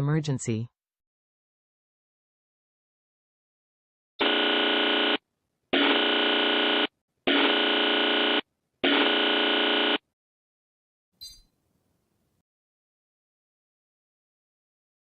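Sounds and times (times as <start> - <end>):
harsh electronic alert buzzer: 4.2 - 5.2, 5.8 - 10.0.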